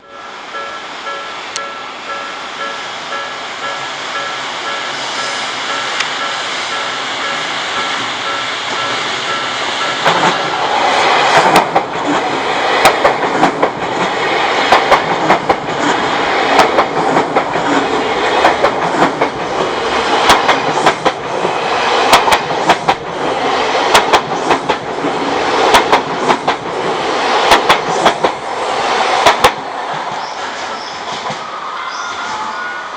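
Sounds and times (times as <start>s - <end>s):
crossing warning bell ringing: 0.0s - 10.5s
electric train passing: 0.0s - 32.9s
train wheels clacking over rail joints: 2.6s - 28.4s, 29.0s - 31.4s.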